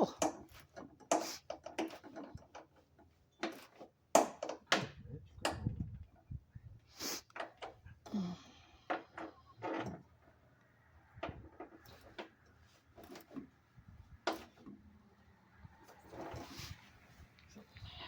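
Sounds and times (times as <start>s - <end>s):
tools knocking and scraping: 0.0s - 5.9s, 8.9s - 10.4s, 11.2s - 14.9s, 15.8s - 16.8s.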